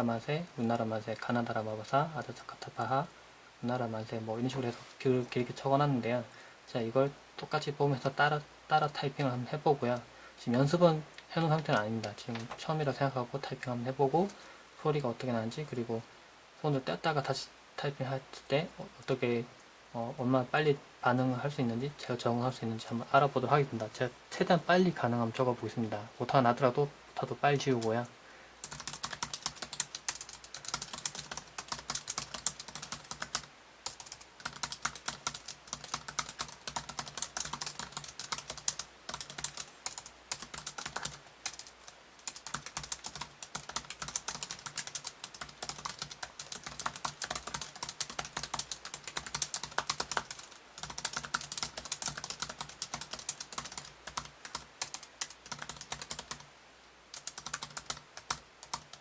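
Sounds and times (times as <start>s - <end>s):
laptop keyboard typing: 28.6s - 56.4s, 57.1s - 59.0s.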